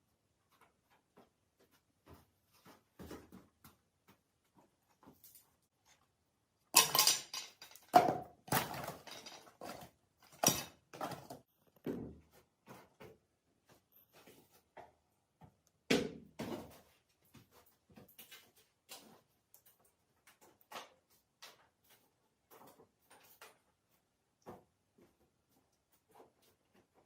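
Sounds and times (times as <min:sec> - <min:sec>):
hard objects knocking and clinking: 0:06.7 - 0:11.2.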